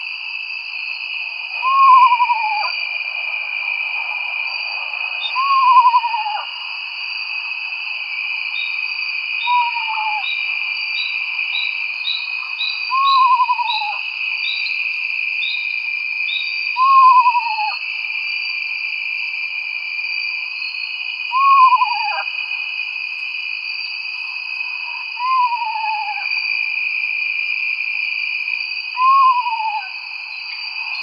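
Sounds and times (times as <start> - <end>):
owl descending whinny calls: 1.6 - 2.7, 5.4 - 6.4, 21.3 - 22.2.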